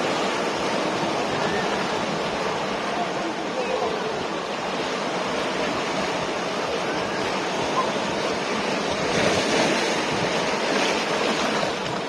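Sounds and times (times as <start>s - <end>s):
ocean surf breaking on beach: 0.0s - 12.0s.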